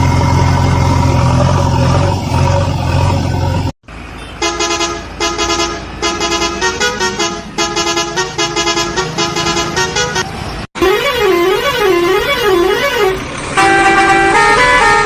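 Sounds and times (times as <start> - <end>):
vehicle engine: 0.0 - 15.0
musical horn honking a tune: 10.8 - 15.0.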